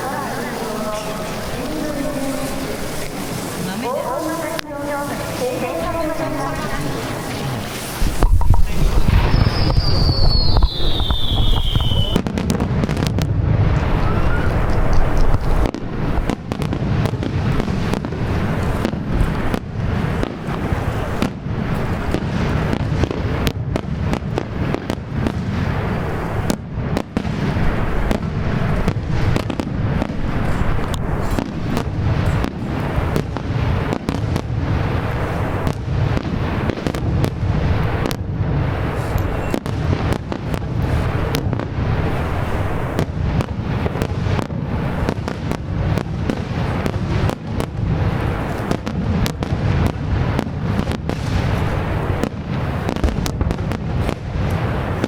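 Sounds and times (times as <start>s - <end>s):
fireworks bursting and crackling: 0.0s - 55.0s
low rumble of booms: 7.8s - 20.7s, 21.3s - 55.0s.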